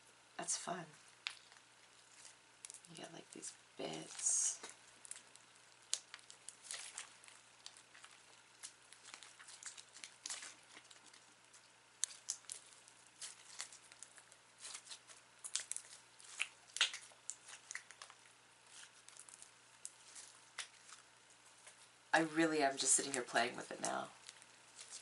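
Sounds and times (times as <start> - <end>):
slime squishing with crackles: 0.0 - 25.0.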